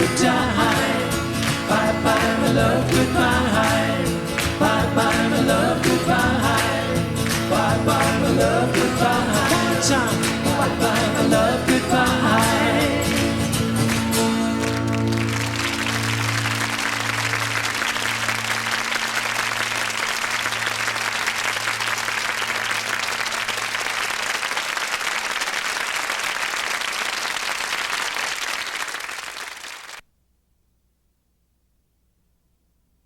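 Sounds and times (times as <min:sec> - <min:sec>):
studio audience applauding: 0:00.0 - 0:30.0
low chord ringing: 0:15.2 - 0:21.2.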